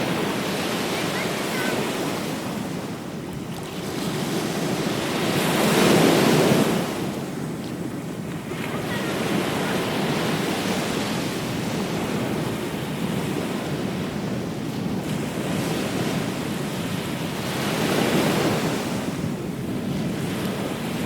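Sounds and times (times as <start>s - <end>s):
ocean waves on beach: 0.0s - 21.0s.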